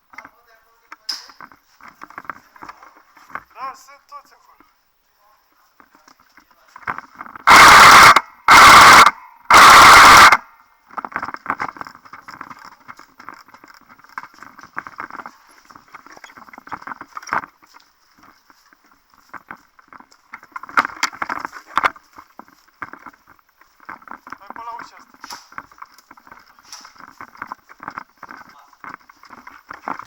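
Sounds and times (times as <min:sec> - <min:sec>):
scattered crackling: 0:00.0 - 0:30.0
airsoft gun full-auto bursts: 0:07.5 - 0:10.4.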